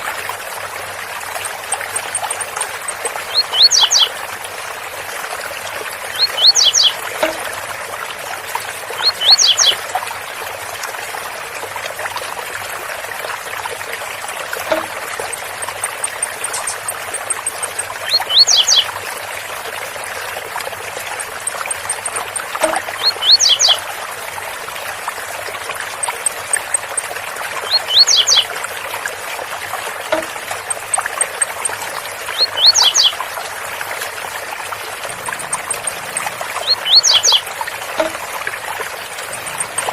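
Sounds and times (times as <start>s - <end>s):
faint high ticking: 1.0s - 4.2s, 6.1s - 7.8s, 14.2s - 18.9s, 20.5s - 23.9s, 30.1s - 33.2s, 35.0s - 39.9s
bird singing high sweeping notes: 3.3s - 4.1s, 6.1s - 7.0s, 9.0s - 9.8s, 14.7s - 18.9s, 27.6s - 28.4s, 32.3s - 33.2s, 35.1s - 38.1s.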